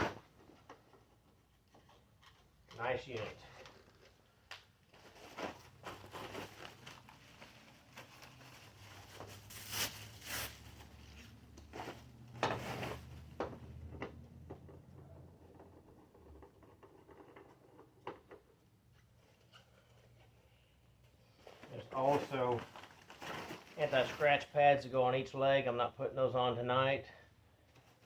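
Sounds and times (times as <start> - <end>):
handling clicks and knocks: 12.3 - 19.2.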